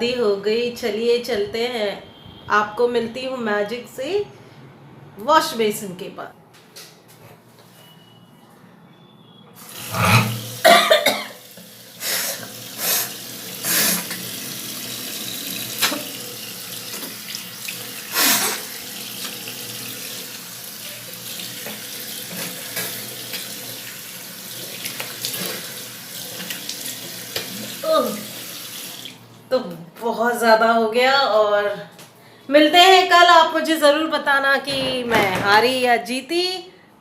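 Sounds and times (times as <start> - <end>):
tap running into wash basin: 9.6 - 29.2
woman blowing her nose: 12.0 - 14.2, 18.1 - 18.7
woman sneezing: 18.1 - 18.6.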